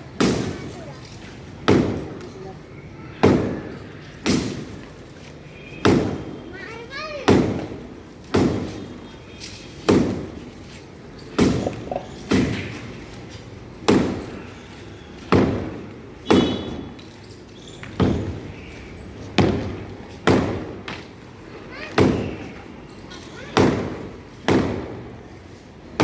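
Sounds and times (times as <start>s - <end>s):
sledgehammer striking masonry: 0.2s - 0.8s, 1.6s - 2.2s, 3.2s - 3.6s, 5.8s - 6.3s, 7.3s - 8.9s, 9.9s - 10.4s, 11.4s - 12.8s, 13.8s - 14.4s, 15.3s - 16.9s, 18.0s - 18.4s, 19.4s - 21.0s, 22.0s - 22.5s, 23.6s - 25.0s.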